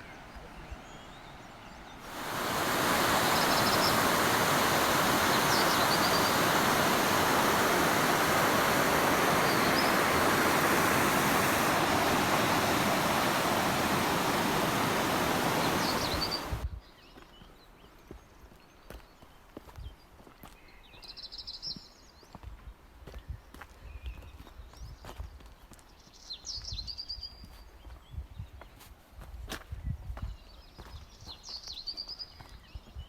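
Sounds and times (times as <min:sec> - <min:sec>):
rushing water: 0:00.0 - 0:16.6
outdoor ambience: 0:00.0 - 0:16.7.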